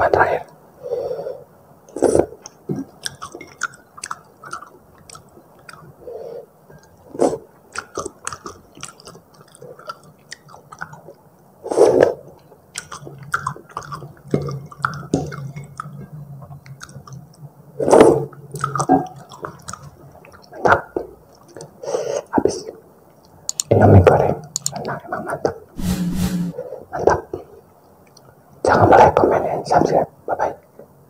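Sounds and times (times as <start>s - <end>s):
wet mouth chewing clicks: 2.4s - 5.9s, 7.7s - 11.2s, 12.7s - 16.0s, 18.5s - 20.5s.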